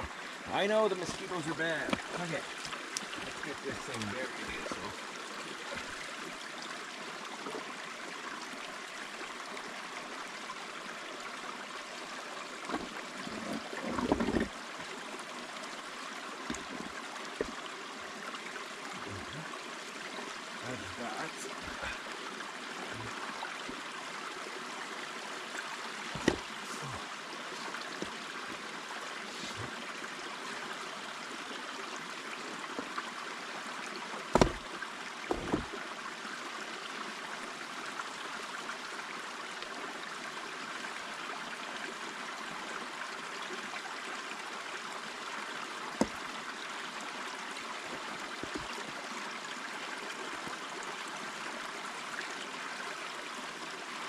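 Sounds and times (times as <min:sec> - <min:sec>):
creek water running: 0:00.0 - 0:54.0
short sharp knocks: 0:34.3 - 0:34.6, 0:35.3 - 0:35.7.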